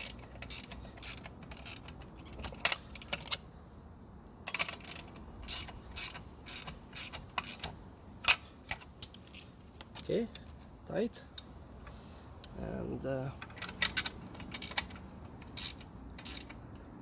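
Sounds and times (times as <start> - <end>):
wrench clicking: 0.0 - 3.4, 4.5 - 7.7, 13.5 - 16.6.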